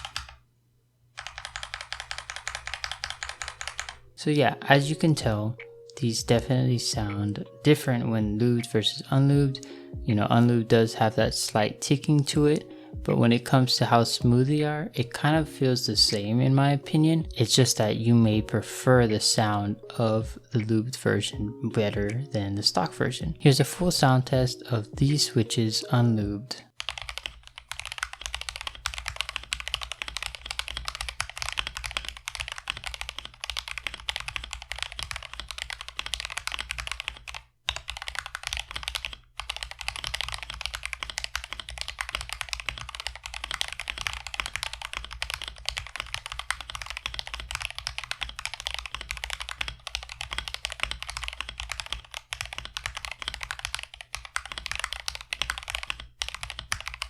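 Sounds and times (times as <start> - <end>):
mechanical keyboard typing: 0.0 - 0.4, 1.2 - 4.0, 8.3 - 14.5, 26.8 - 57.0.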